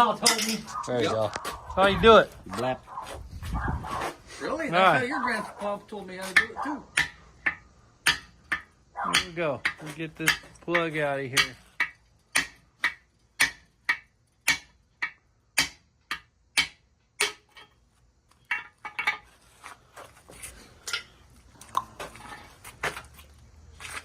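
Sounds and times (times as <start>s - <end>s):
hammer striking metal: 6.3s - 17.7s
light knocks and scraping: 17.6s - 24.0s.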